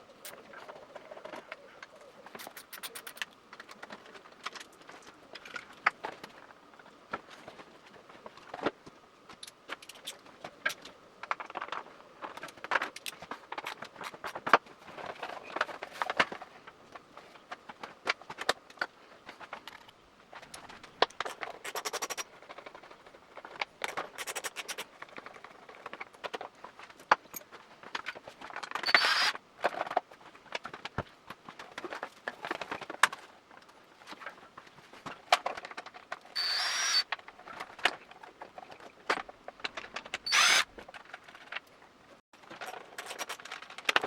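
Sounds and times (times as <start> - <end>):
hand tools clicking and scraping: 0.2 - 6.3, 17.1 - 33.2, 35.3 - 41.7, 42.5 - 44.0.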